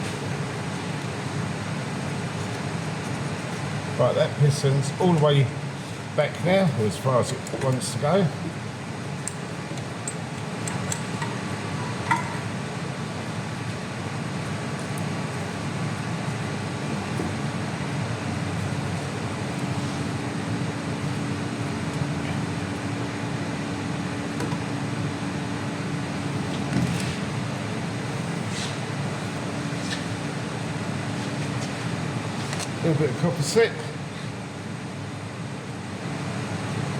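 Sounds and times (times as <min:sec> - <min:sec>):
machine mechanical hum: 0:00.0 - 0:36.9
tools clicking: 0:09.2 - 0:11.4.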